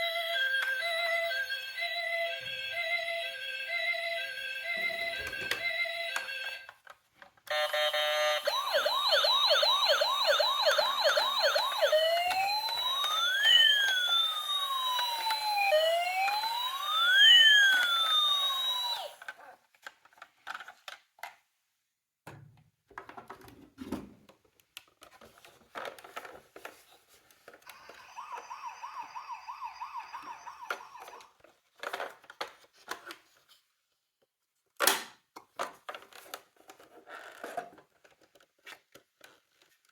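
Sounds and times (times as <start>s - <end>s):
electronic toy sirens: 0.0s - 6.7s, 7.5s - 19.3s, 27.7s - 31.4s.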